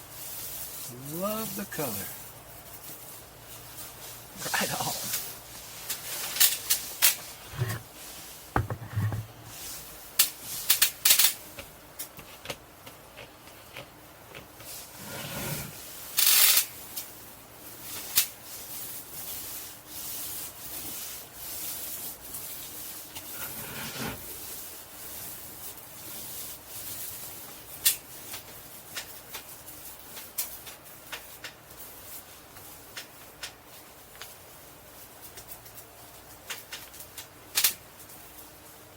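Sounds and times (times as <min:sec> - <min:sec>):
scratchy rubbing strokes: 0:00.0 - 0:10.0, 0:14.7 - 0:16.5, 0:17.7 - 0:27.8
loud scrape: 0:07.4 - 0:07.9, 0:08.6 - 0:09.6, 0:14.8 - 0:15.8, 0:23.3 - 0:24.2.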